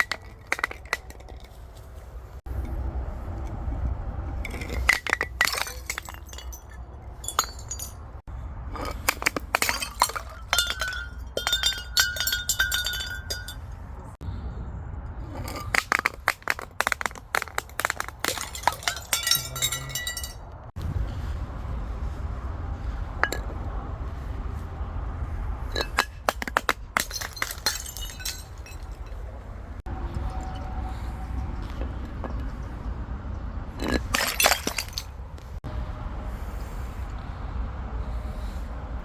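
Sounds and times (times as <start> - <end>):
glass shards clinking: 4.4 - 8.1, 8.8 - 13.7, 15.4 - 20.5, 25.7 - 29.2, 33.8 - 35.1
glass bottles breaking: 4.5 - 8.0, 8.8 - 13.7, 15.4 - 20.4, 25.8 - 29.2, 33.8 - 35.1.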